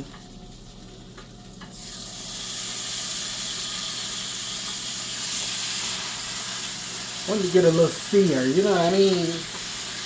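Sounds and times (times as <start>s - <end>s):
chicken sizzling in butter: 1.7s - 10.0s.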